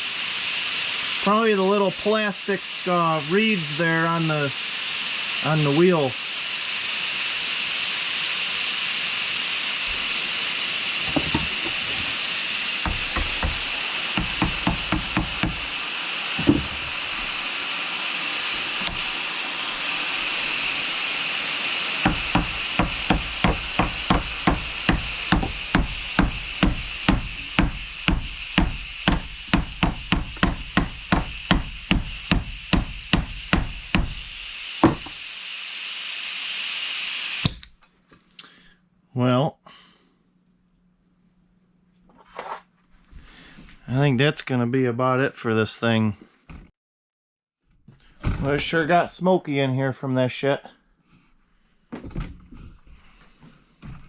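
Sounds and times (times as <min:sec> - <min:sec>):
compressed air hissing: 0:00.0 - 0:37.4
grinder knocking: 0:10.9 - 0:35.3.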